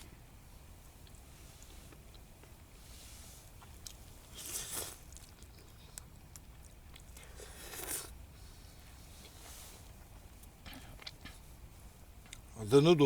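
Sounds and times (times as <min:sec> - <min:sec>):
person chewing food: 0:03.6 - 0:08.2, 0:09.2 - 0:11.4.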